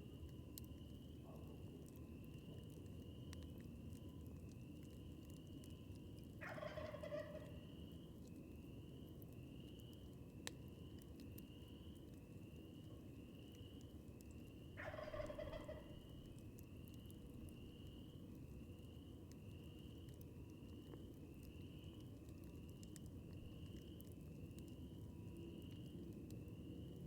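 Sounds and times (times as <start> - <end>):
turkey gobbling: 6.4 - 7.6, 14.8 - 16.1
campfire hissing: 16.0 - 27.0.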